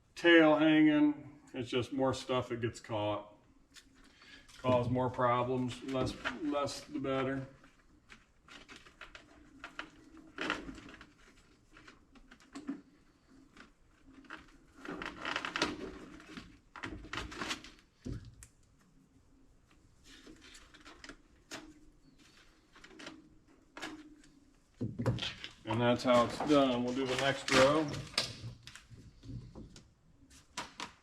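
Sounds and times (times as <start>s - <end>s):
twine handling rustling: 25.2s - 28.2s.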